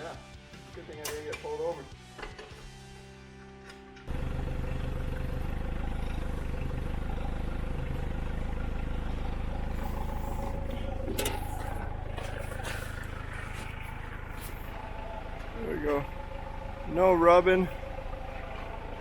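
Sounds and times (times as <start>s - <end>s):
car engine running: 4.1s - 19.0s.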